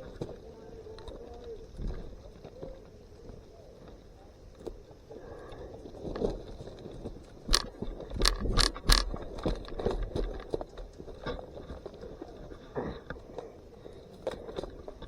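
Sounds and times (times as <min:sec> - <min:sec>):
sharp cracks and knocks: 0:06.2 - 0:12.0.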